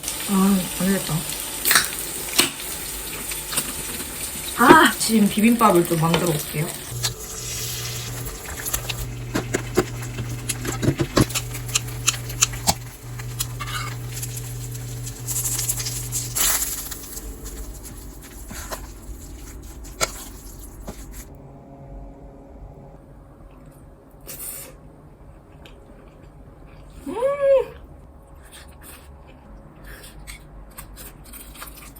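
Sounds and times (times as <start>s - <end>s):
low hum: 3.9s - 24.2s.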